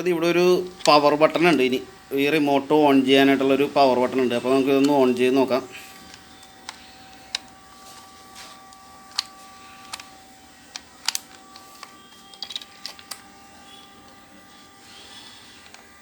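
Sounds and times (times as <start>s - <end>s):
remote control plastic clicks: 0.6s - 1.6s, 6.0s - 14.2s.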